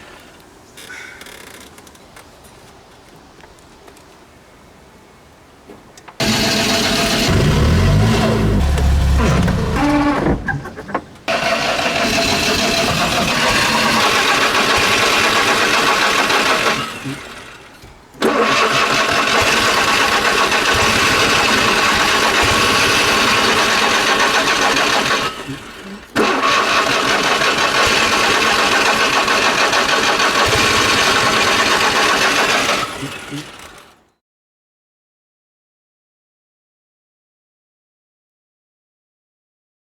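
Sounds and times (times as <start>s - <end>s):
car engine cranking: 6.2s - 34.0s.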